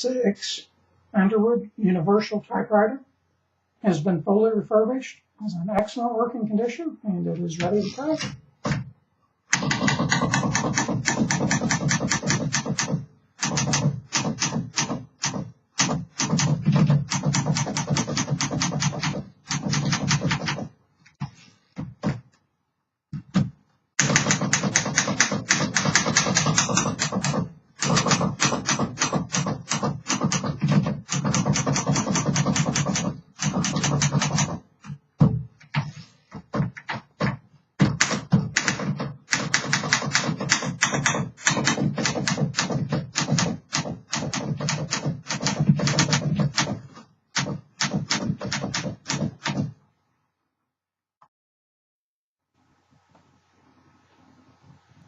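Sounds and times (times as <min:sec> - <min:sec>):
manual typewriter key strikes: 0:09.6 - 0:20.6, 0:24.0 - 0:34.5, 0:38.0 - 0:46.8.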